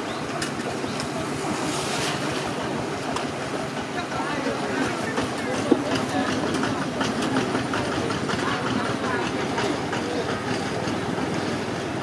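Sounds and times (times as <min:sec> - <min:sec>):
floodwater rushing: 0:00.0 - 0:09.6
faint voices: 0:00.0 - 0:12.0.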